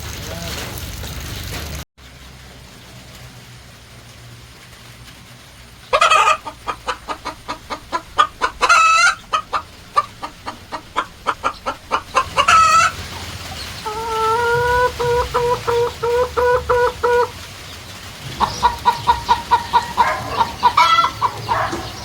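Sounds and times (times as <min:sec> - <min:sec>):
chicken cackling: 0:05.8 - 0:22.0.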